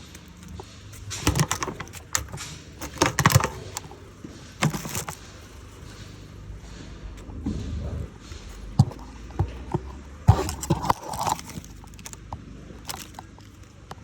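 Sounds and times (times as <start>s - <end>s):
hard objects clattering: 0.0s - 14.0s.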